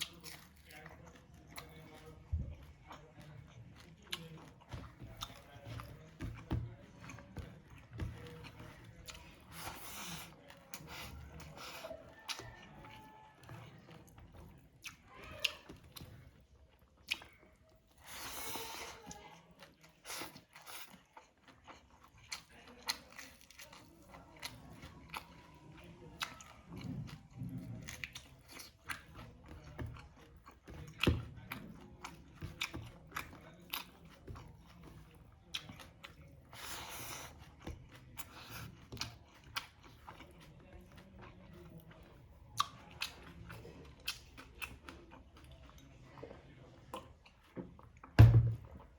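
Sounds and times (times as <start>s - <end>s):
person chewing and crunching: 0.0s - 48.9s.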